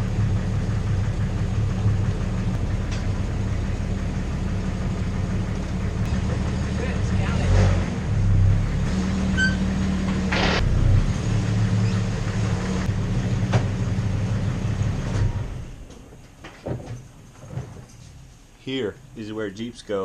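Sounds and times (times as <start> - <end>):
car engine running: 0.0 - 15.9.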